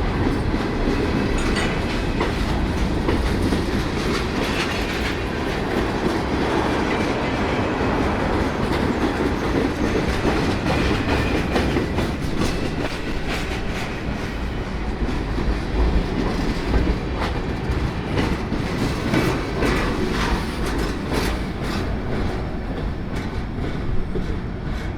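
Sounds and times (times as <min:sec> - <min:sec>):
train wheels clacking over rail joints: 0:00.0 - 0:24.9.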